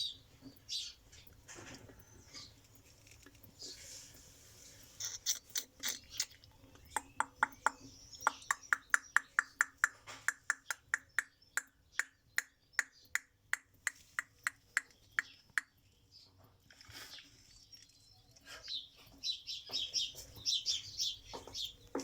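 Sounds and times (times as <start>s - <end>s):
dove pecking sharp taps: 6.8s - 15.8s, 21.2s - 22.0s.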